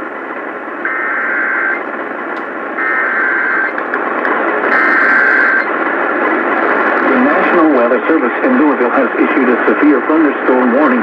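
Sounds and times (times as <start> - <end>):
steady radio static: 0.0 - 11.0
buzzy digital data bursts: 0.8 - 1.8, 2.8 - 3.8, 4.7 - 5.7.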